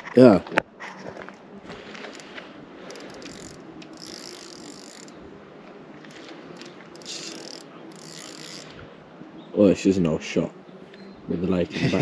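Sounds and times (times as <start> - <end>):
fishing reel clicking: 1.9 - 5.2, 6.0 - 8.9.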